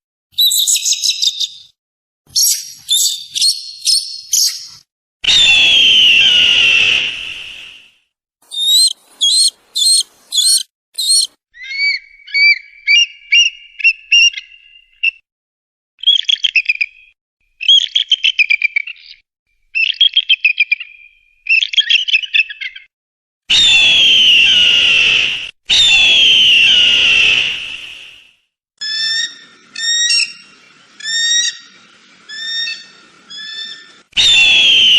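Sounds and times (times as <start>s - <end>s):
eagle screams: 5.2s - 7.6s, 8.5s - 13.0s, 23.5s - 28.0s, 32.3s - 34.9s
eagle piping and chattering: 8.5s - 11.3s.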